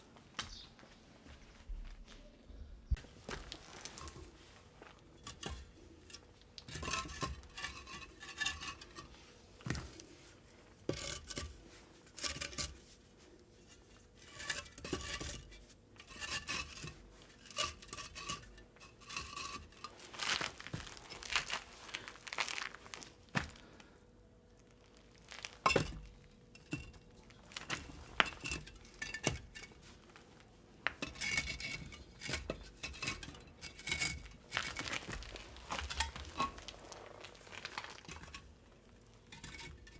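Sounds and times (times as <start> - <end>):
rustling: 3.0 - 23.7, 24.7 - 39.9
hard objects clinking and scraping: 3.3 - 10.2, 10.8 - 12.8, 13.6 - 22.8, 25.3 - 30.1, 30.8 - 39.9.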